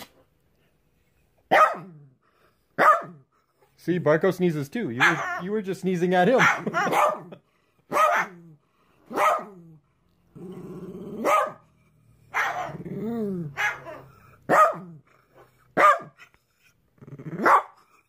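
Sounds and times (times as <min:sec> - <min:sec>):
dog barking: 0:01.5 - 0:02.0, 0:02.8 - 0:03.2, 0:05.0 - 0:05.4, 0:06.4 - 0:08.4, 0:09.1 - 0:09.6, 0:11.2 - 0:11.6, 0:12.3 - 0:12.8, 0:13.5 - 0:15.0, 0:15.8 - 0:16.2, 0:17.4 - 0:17.8
dog growling: 0:09.4 - 0:15.6, 0:16.8 - 0:18.0.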